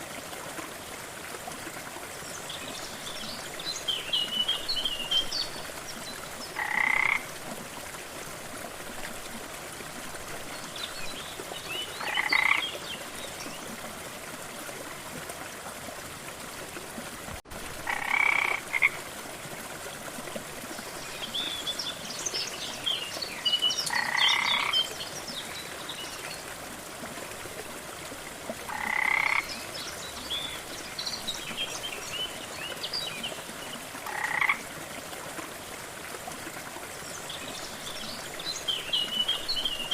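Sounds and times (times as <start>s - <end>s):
frog croaking: 6.6s - 7.3s, 12.0s - 12.6s, 17.8s - 19.0s, 23.9s - 24.8s, 28.7s - 29.5s, 34.0s - 34.6s.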